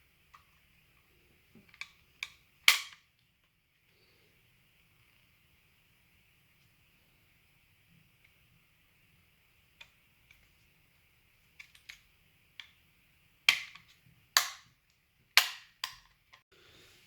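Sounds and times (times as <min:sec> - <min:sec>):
plastic parts clicking and tapping: 0:11.5 - 0:12.8, 0:13.5 - 0:16.4.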